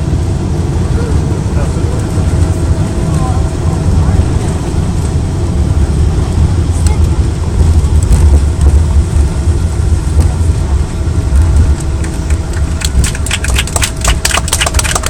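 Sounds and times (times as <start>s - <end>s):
airplane cabin rumble: 0.0s - 15.0s
rattles and clicks: 11.2s - 15.0s.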